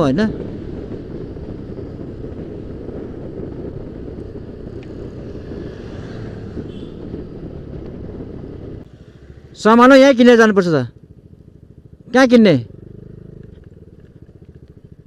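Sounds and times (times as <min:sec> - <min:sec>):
wind rumbling on microphone: 0:00.0 - 0:09.9
scooter engine running: 0:10.9 - 0:15.0.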